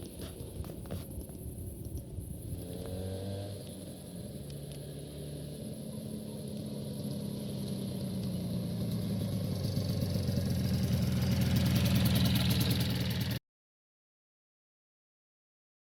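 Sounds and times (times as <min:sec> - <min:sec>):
two-stroke motorcycle engine: 0:02.6 - 0:13.4.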